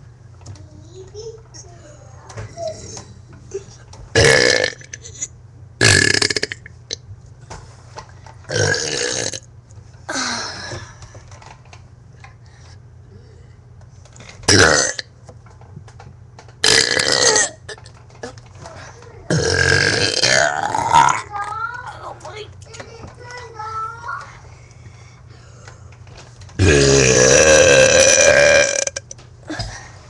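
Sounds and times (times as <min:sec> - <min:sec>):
person burping loudly: 0:04.2 - 0:05.2, 0:05.8 - 0:06.7, 0:08.5 - 0:09.5, 0:14.5 - 0:15.1, 0:16.6 - 0:17.7, 0:19.3 - 0:21.3, 0:26.6 - 0:29.1.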